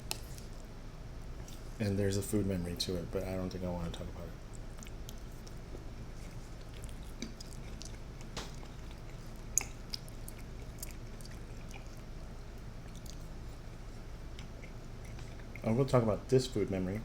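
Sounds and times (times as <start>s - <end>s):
wet chewing mouth smacks: 4.5s - 12.1s, 12.8s - 13.4s.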